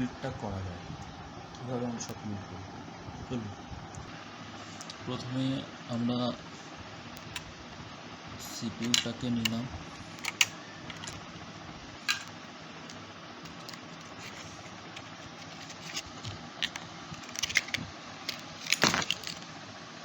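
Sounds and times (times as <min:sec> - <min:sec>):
steady background hiss: 0:00.0 - 0:20.0
packaging rustle: 0:13.5 - 0:19.5.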